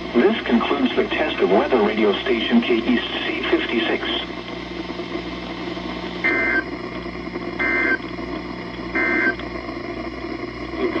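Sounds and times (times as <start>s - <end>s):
radio hiss: 0.0s - 6.7s, 10.3s - 11.0s
low hum: 0.0s - 11.0s
two-tone digital data bursts: 6.2s - 6.6s, 9.0s - 9.4s.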